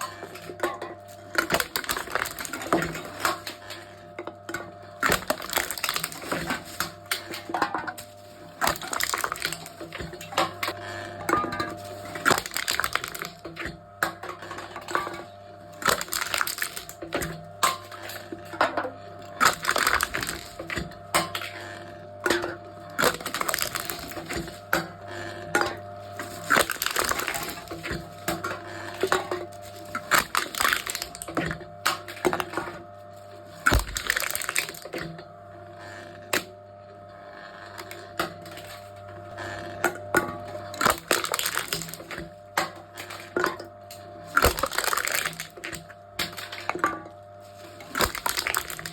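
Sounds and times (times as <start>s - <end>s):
cans crushing with metallic crunches: 0.0s - 3.8s, 5.0s - 10.8s, 11.4s - 18.7s, 19.3s - 21.5s, 22.4s - 24.9s, 25.6s - 32.6s, 33.6s - 35.1s, 40.7s - 48.9s
machine humming: 19.1s - 21.4s, 22.0s - 35.6s.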